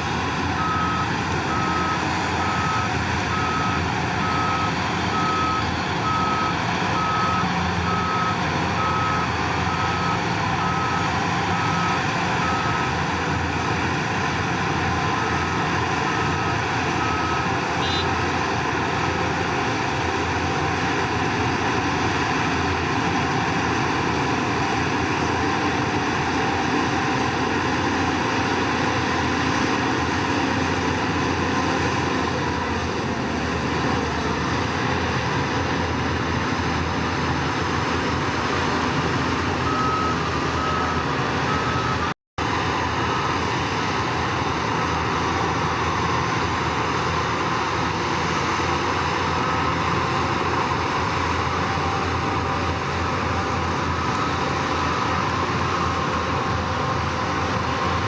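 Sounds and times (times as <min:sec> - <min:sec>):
heavy machinery diesel engines: 0:00.0 - 0:58.0
reversing alarm beeping: 0:00.5 - 0:13.1, 0:15.0 - 0:18.1, 0:39.6 - 0:42.2, 0:49.3 - 0:58.0.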